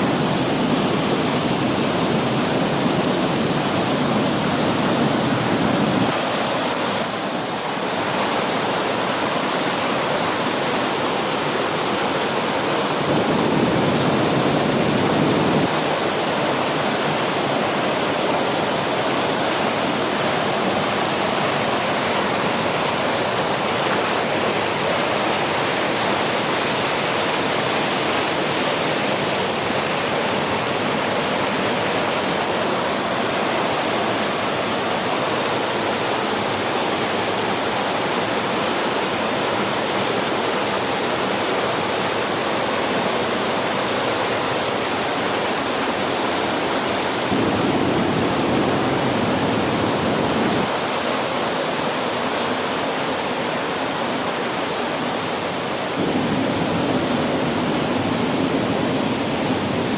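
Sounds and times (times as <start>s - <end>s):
waterfall rushing: 0.0s - 59.9s.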